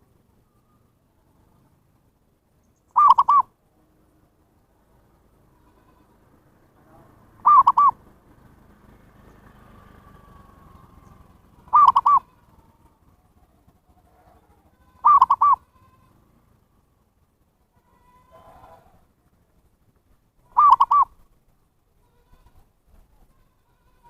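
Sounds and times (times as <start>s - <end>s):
dove cooing: 2.9s - 3.5s, 6.9s - 8.0s, 9.5s - 15.6s, 20.5s - 21.2s.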